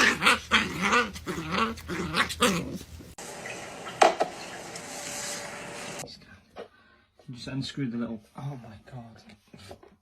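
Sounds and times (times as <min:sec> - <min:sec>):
dog grumbling and whining: 0:00.0 - 0:03.1.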